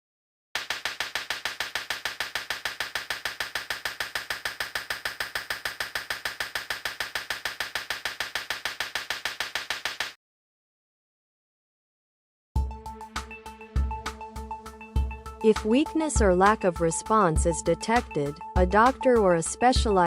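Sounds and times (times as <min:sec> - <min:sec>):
rapid sharp clicks: 0:00.6 - 0:10.2.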